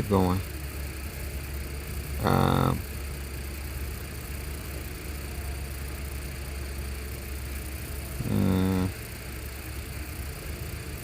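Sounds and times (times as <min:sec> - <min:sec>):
engine idling: 0:00.0 - 0:11.0
short low voice: 0:02.2 - 0:02.8, 0:08.2 - 0:09.0.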